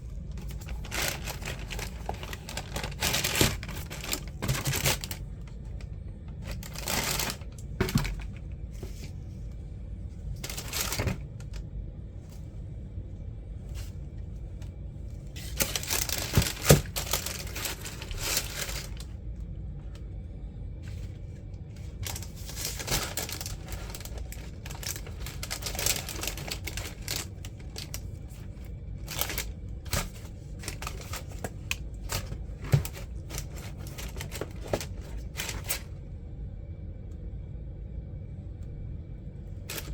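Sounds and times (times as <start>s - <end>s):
tissue paper rustling: 0.2s - 5.5s, 6.4s - 9.4s, 10.4s - 11.2s, 15.2s - 19.1s, 20.9s - 35.9s, 39.7s - 39.9s.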